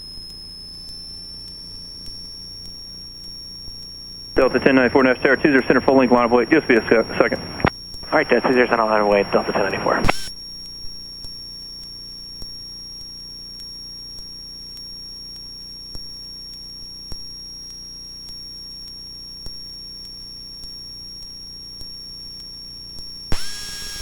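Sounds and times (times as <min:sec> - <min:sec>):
low hum: 0:04.4 - 0:10.1
high-pitched electrical whine: 0:23.3 - 0:24.0.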